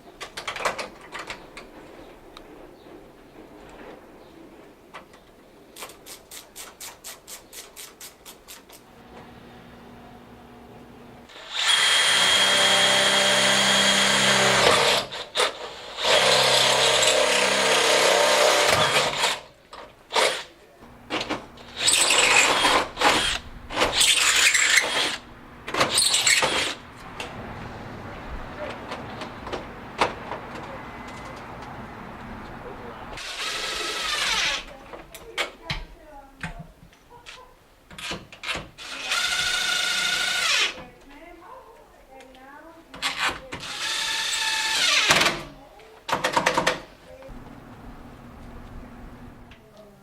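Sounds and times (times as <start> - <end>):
power drill running: 8.8 - 19.4, 20.2 - 27.6, 29.2 - 34.7, 47.3 - 49.5.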